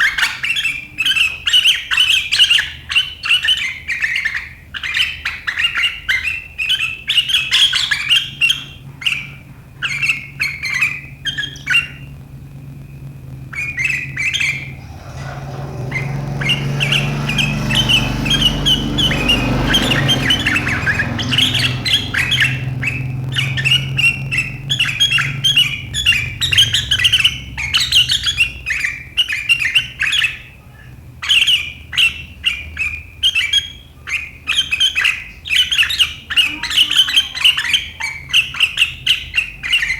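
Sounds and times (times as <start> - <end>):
bird chattering: 0.0 - 39.9
low rumble: 11.1 - 28.7.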